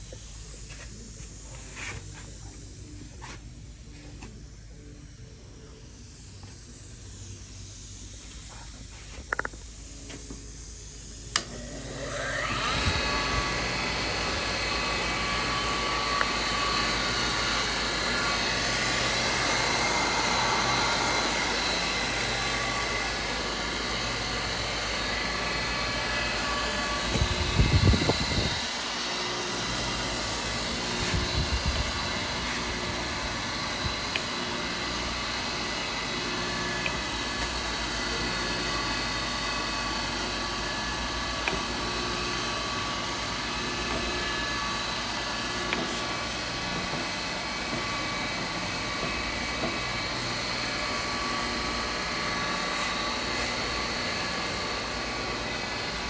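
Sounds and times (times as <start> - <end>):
grinder motor whining: 11.3 - 56.0.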